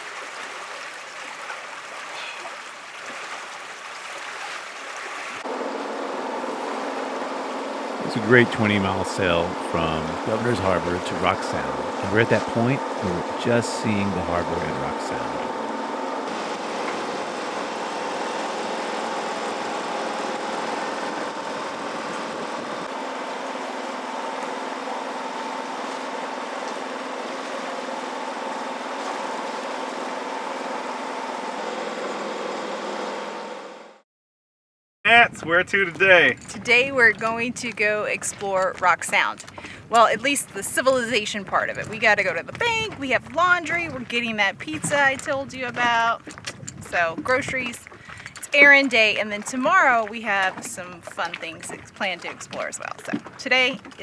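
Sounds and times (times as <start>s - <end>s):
water rushing along a hull: 0.0s - 33.8s, 35.7s - 54.0s
steady hum: 5.4s - 33.9s.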